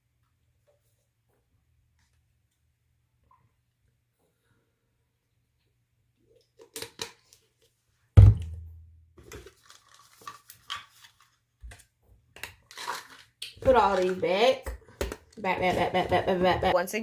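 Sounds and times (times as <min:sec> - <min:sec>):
bottle thunk on hard surface: 0:08.2 - 0:08.8.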